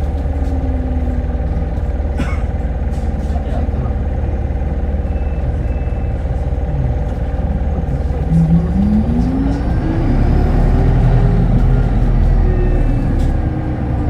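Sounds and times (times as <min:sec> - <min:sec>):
bus accelerating whine: 0:00.0 - 0:14.0
bus drivetrain rumble: 0:00.0 - 0:14.0.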